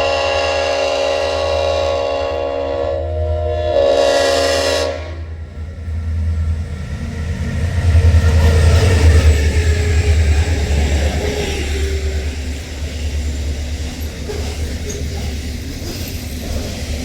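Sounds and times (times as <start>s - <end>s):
locomotive air horn chord: 0.0s - 5.5s
diesel train rumble: 0.0s - 17.0s.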